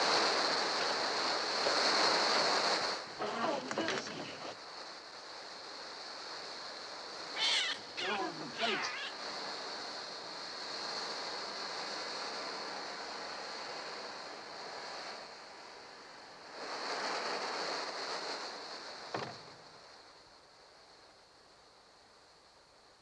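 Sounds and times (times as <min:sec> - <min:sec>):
rushing wind-like hiss: 0:00.0 - 0:23.0
short falling cry: 0:07.4 - 0:09.2.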